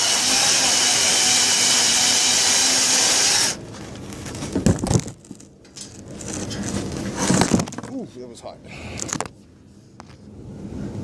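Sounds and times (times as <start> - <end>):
bandsaw cutting metal: 0.0 - 3.6.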